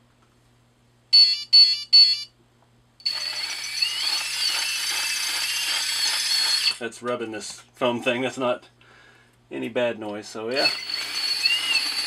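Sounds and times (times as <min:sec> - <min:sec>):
electric motor whining: 0:03.1 - 0:06.8, 0:10.6 - 0:12.0
electronic beeps: 0:10.6 - 0:12.0.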